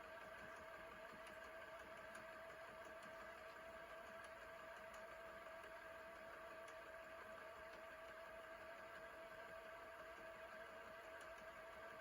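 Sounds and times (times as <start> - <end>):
light mechanical ticks: 0.0 - 12.0.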